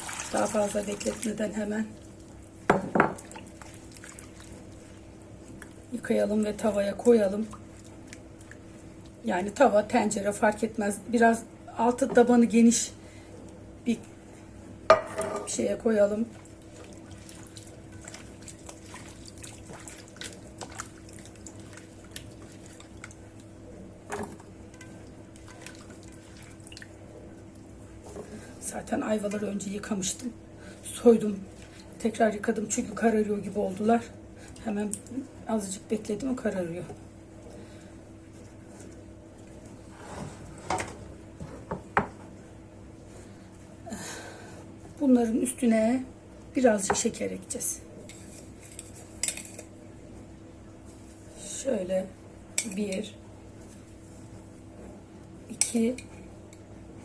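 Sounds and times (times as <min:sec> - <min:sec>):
knock in a pan: 0:02.7 - 0:03.2
kitchenware knocking and clinking: 0:14.9 - 0:15.5
rustling scrape: 0:39.9 - 0:40.7.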